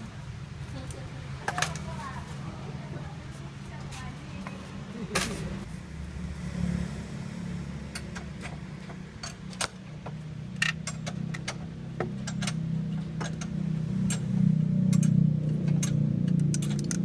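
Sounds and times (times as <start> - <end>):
sharp clicks and ticks: 7.9 - 17.0.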